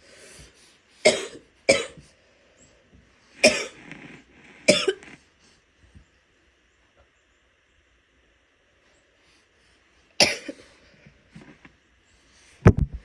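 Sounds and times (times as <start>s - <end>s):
woman coughing: 1.0s - 2.0s, 3.4s - 3.8s, 4.7s - 5.0s, 10.2s - 10.6s.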